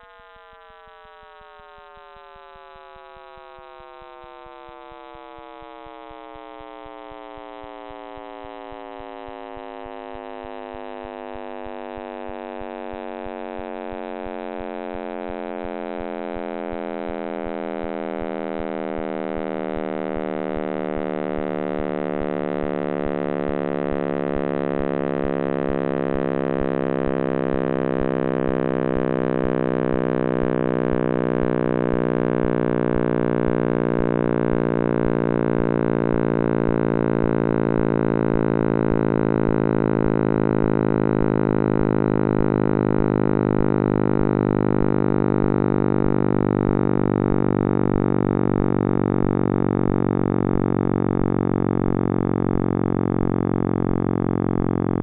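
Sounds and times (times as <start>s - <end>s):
dense hum of stacked tones: 0.0s - 55.0s
regular low pulse: 1.6s - 55.0s.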